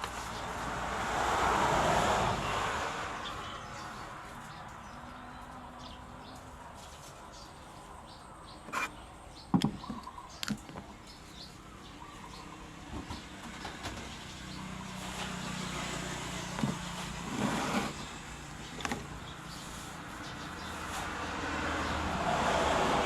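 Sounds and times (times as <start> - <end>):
passing motor vehicle hum: 0.0 - 9.5, 10.9 - 23.0.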